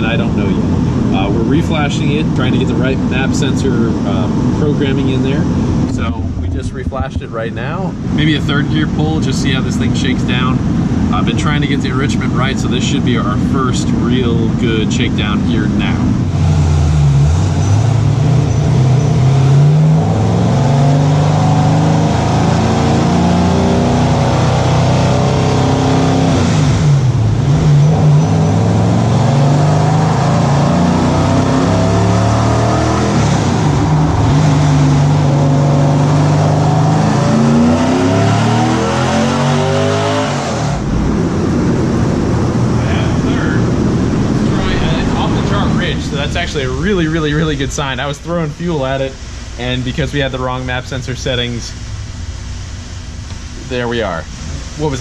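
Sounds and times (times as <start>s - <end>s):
engine revving: 0.0s - 51.8s.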